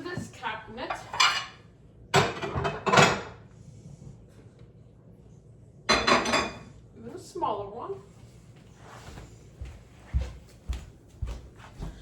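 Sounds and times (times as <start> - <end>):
plates clattering: 0.9 - 1.6, 2.2 - 3.4, 5.9 - 6.6.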